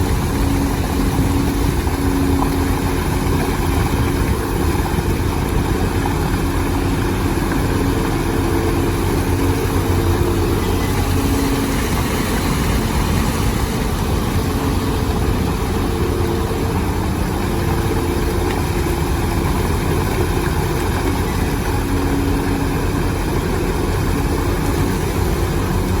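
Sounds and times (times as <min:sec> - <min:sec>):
heavy machine engine running: 0:00.0 - 0:26.0.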